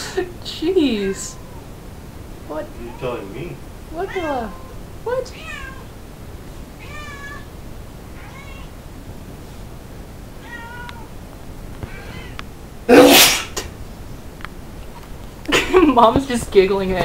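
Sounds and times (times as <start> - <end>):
cat meowing: 4.0 - 5.9, 6.8 - 8.8, 10.4 - 11.2, 11.8 - 13.2
cat sneezing: 12.9 - 13.7.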